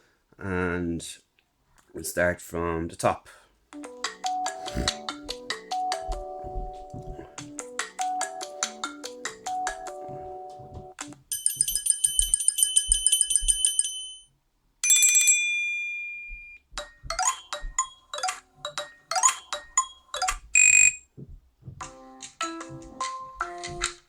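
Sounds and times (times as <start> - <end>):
ringtone melody: 3.8 - 14.2, 16.2 - 21.1
single chime: 11.3 - 16.6
trilling high phone ring: 11.3 - 16.6, 19.1 - 21.1.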